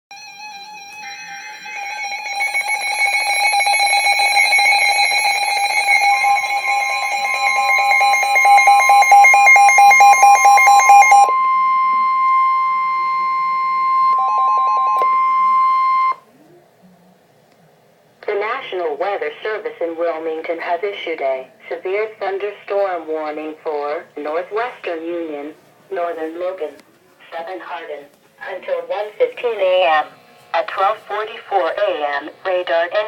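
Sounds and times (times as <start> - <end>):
steady high warning tone: 0.1 - 16.2
rapidly pulsing electronic beeping: 2.0 - 16.2.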